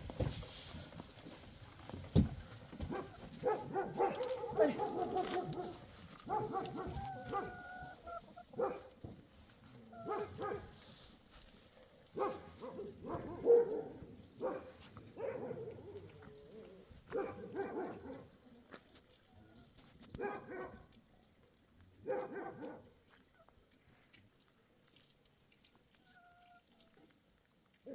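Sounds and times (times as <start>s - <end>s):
dog barking: 2.9s - 7.7s, 8.5s - 9.0s, 10.0s - 10.8s, 12.2s - 16.0s, 17.1s - 18.3s, 20.2s - 20.9s, 22.0s - 23.0s.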